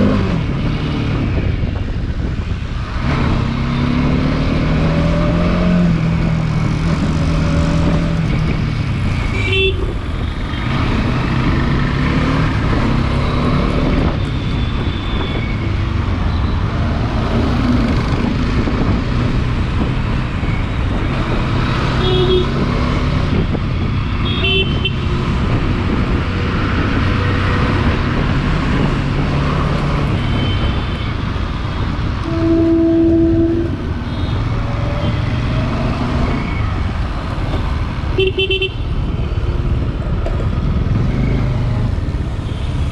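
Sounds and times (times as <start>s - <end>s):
wind and road noise: 0.0s - 42.9s
long low horn: 32.2s - 34.4s.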